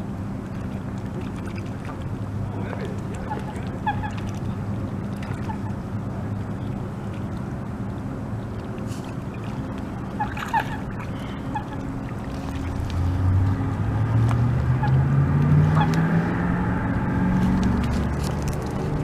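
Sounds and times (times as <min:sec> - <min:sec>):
vehicle engine accelerating: 0:10.2 - 0:19.0.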